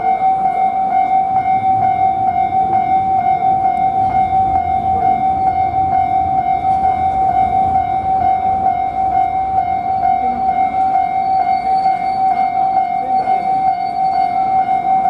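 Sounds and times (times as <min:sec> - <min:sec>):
level crossing warning bell: 0:00.0 - 0:15.0
steady low rumble: 0:01.1 - 0:11.3.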